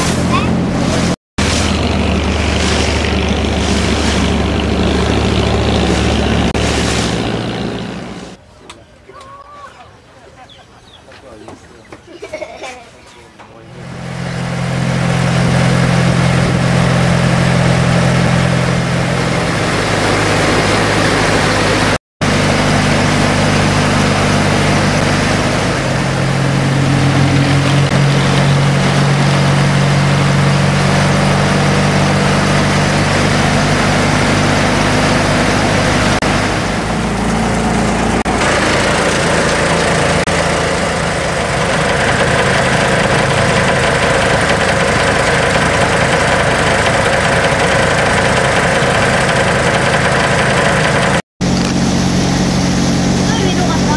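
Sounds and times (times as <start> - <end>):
boat engine running: 0.0 - 8.4, 13.4 - 53.9
wind and water hiss: 1.4 - 8.0.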